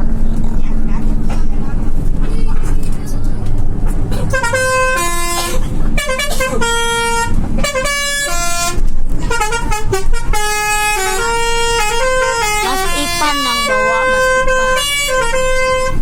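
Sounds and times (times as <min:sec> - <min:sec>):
bus multi-tone horn playing a tune: 0:04.1 - 0:16.0.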